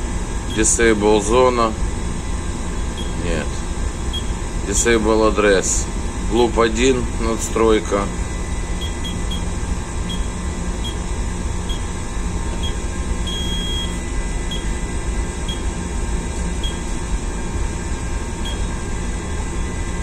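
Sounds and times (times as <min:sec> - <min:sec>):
machinery and ventilation drone: 0:00.0 - 0:20.0
keypad high beeps: 0:08.8 - 0:09.5, 0:10.1 - 0:11.0, 0:12.6 - 0:14.7.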